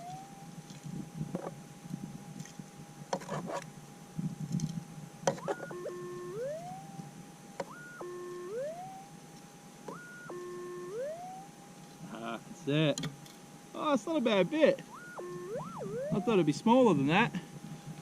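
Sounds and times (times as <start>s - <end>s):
metal detector steady tone: 0.0s - 0.6s, 5.3s - 9.2s, 9.8s - 11.6s, 14.6s - 17.2s
warbling detector signal: 0.0s - 0.6s, 5.3s - 9.2s, 9.9s - 11.6s, 14.7s - 17.2s
knocks and scrapes: 2.4s - 3.7s.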